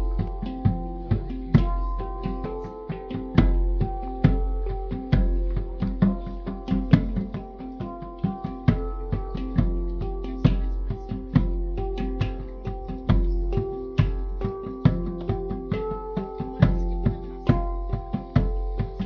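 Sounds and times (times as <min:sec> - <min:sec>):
hand drum beat: 0:00.0 - 0:19.0
plucked string notes: 0:00.0 - 0:19.0.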